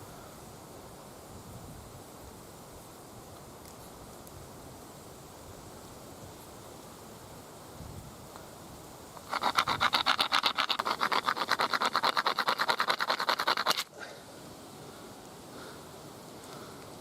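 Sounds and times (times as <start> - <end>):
bone scraping on sandstone: 9.2 - 13.9.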